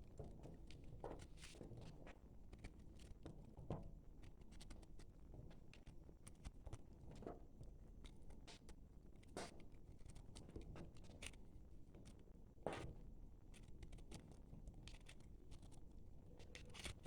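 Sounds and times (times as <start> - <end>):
knife cutting crackling soap: 13.5 - 17.0.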